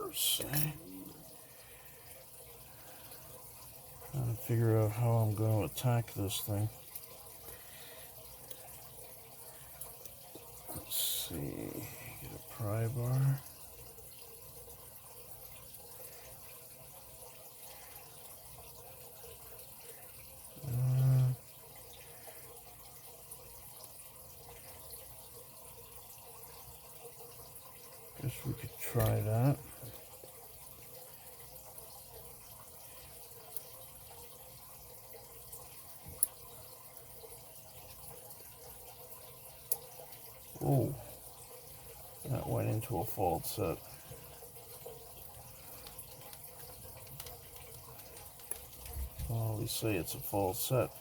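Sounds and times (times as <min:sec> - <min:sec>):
person humming: 0:00.0 - 0:01.2.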